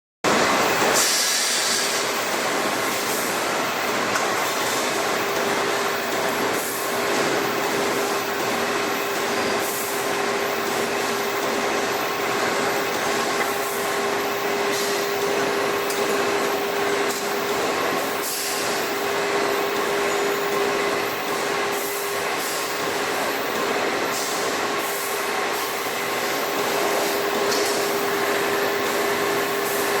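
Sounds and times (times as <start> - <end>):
constant machine hum: 0.3 - 30.0
brief hisses: 1.0 - 2.0.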